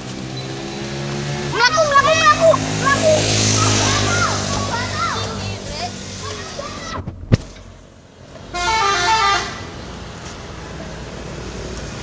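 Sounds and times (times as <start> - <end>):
multi-tone musical air horn: 8.5 - 9.7.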